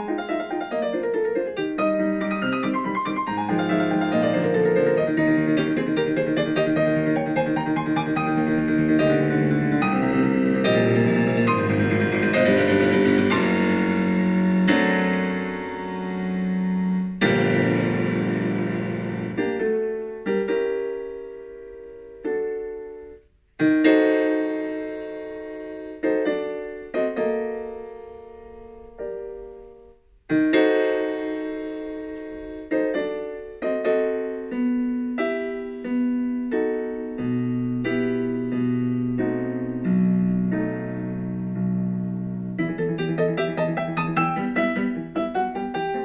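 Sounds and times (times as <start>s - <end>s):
gentle piano melody: 0.0s - 46.0s.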